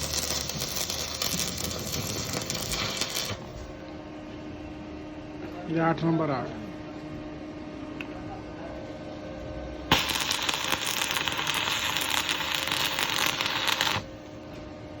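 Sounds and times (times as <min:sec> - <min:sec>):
welding arc crackling: 0:00.0 - 0:03.7, 0:09.9 - 0:14.1
welding machine humming: 0:00.0 - 0:03.9, 0:09.9 - 0:14.4.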